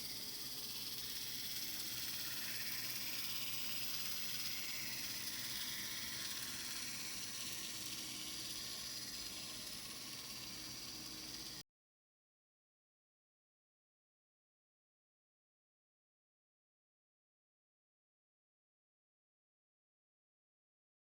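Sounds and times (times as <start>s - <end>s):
model locomotive motor whirring: 0.0s - 11.6s.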